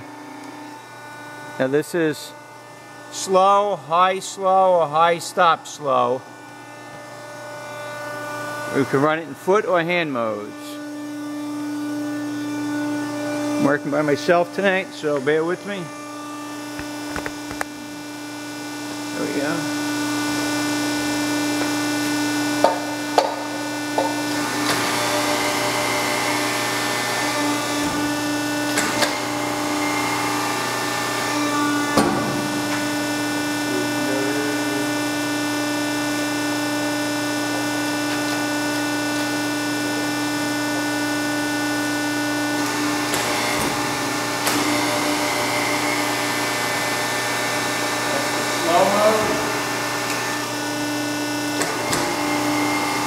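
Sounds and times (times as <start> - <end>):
press brake motor humming: 20.3 - 53.0.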